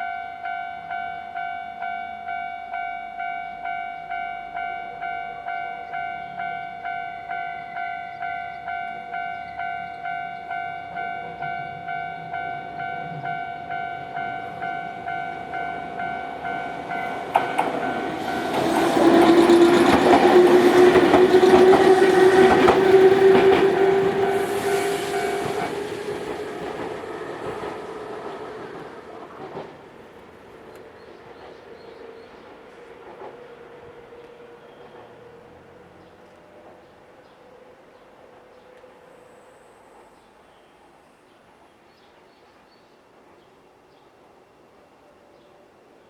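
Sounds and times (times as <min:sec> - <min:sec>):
train whine: 0:00.0 - 0:41.8
train wheels clattering: 0:14.0 - 0:35.4.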